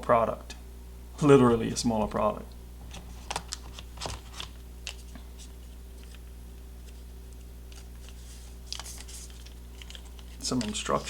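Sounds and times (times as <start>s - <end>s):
low electrical hum: 0.0s - 11.0s
paper packaging rustle: 2.9s - 11.0s.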